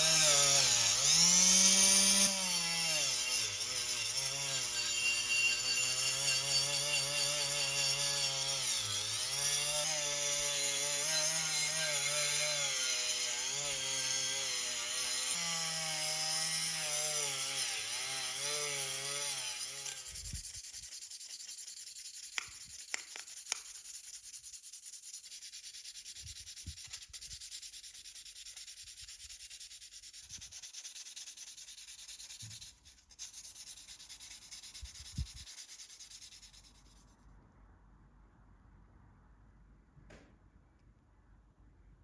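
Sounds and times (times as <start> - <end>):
gritty sanding: 0.0 - 37.1.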